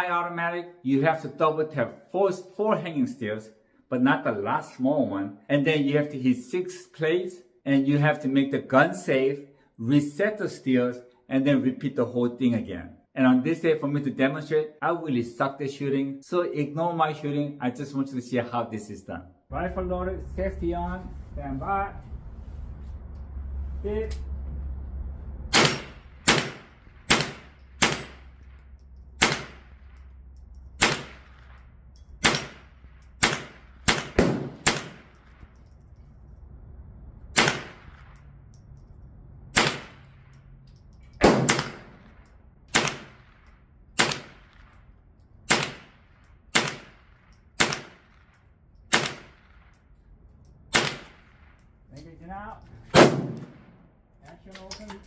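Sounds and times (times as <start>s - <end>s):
rifle shots: 25.5s - 35.6s, 37.3s - 38.3s, 39.5s - 40.4s, 41.2s - 44.8s, 45.5s - 49.8s, 50.7s - 51.6s, 52.9s - 53.8s.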